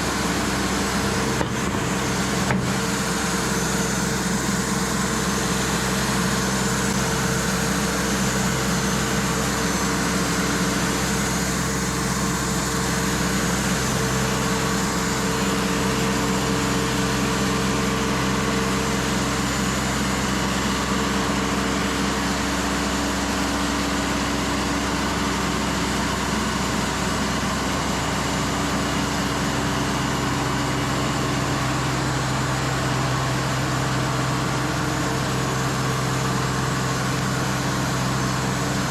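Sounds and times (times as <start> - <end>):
sawmill engine running: 0.0 - 38.9.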